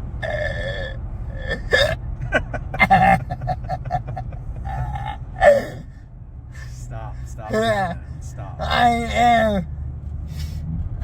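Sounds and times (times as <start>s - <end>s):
truck cabin rumble: 0.0s - 11.0s
person hiccuping: 0.2s - 2.0s, 4.7s - 5.8s
laughter: 2.2s - 5.0s.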